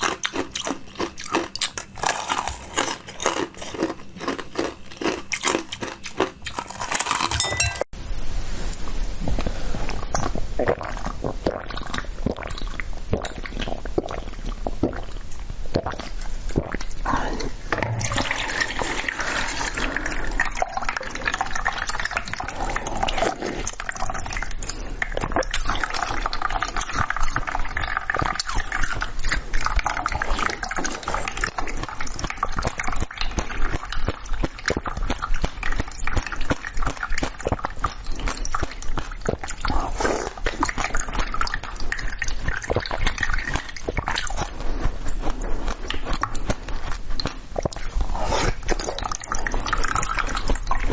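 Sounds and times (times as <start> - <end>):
wet chewing and slurping: 0.0 - 7.9, 9.3 - 50.9
mouth clicks and smacks: 10.1 - 18.2, 20.4 - 50.9.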